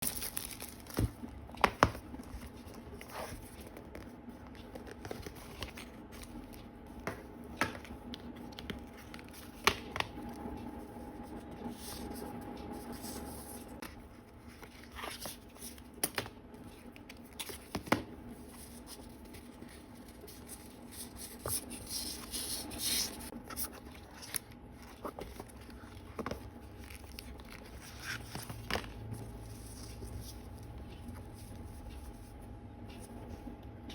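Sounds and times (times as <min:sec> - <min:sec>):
paper and plastic crinkling: 0:00.0 - 0:06.7, 0:12.9 - 0:31.5.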